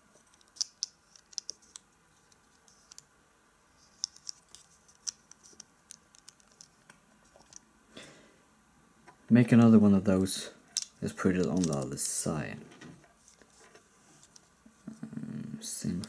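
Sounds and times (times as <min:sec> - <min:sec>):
plastic bricks clicking: 0:00.3 - 0:01.8, 0:03.9 - 0:07.6, 0:10.8 - 0:11.9.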